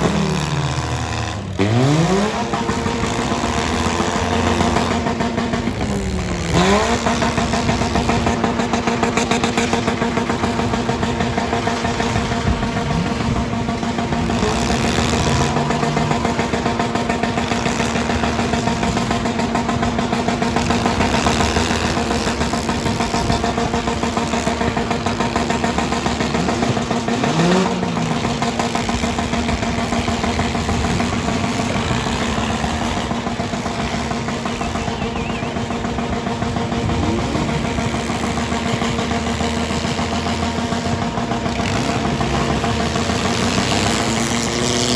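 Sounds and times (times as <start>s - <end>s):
car engines revving: 0.0s - 44.9s.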